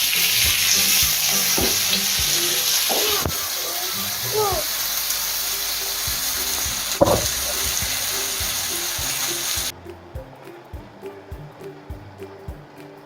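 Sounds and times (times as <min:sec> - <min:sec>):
burger sizzling in frying pan: 0:00.0 - 0:09.7
background music with steady beat: 0:00.0 - 0:13.0
knock: 0:07.0 - 0:07.3.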